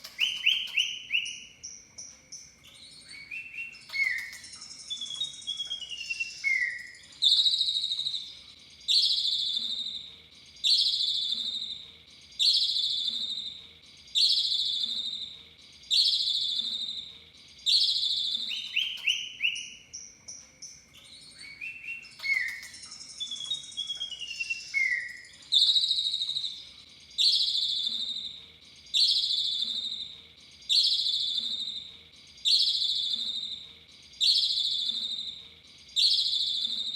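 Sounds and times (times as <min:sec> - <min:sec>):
falling whistled bird notes: 0:00.0 - 0:01.5, 0:02.9 - 0:08.3, 0:21.2 - 0:26.6
starling chirps: 0:00.0 - 0:36.9.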